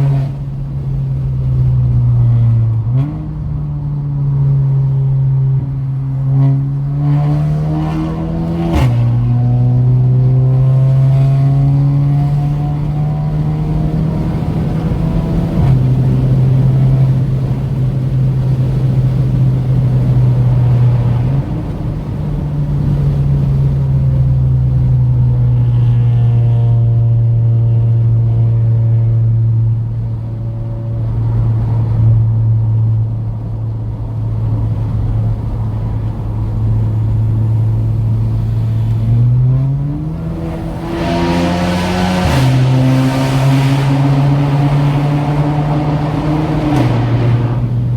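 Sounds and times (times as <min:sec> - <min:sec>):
car driving in tunnel drone: 0:00.0 - 0:47.9.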